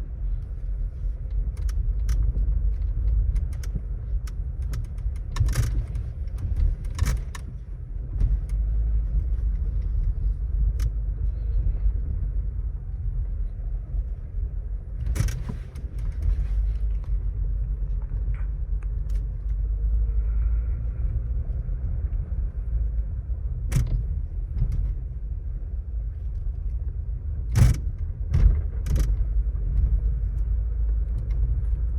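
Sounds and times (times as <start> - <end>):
car cabin rumble: 0.0 - 31.9
dashboard rattling clicks: 15.0 - 16.4.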